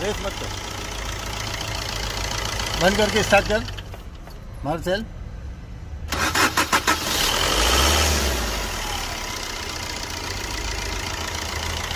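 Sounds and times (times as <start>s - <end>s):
car engine starting and idling: 0.0s - 11.9s.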